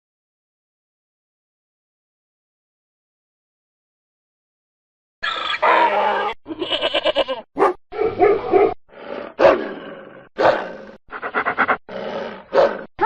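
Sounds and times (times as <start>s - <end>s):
recorded animal calls: 5.2s - 7.4s, 8.2s - 12.7s.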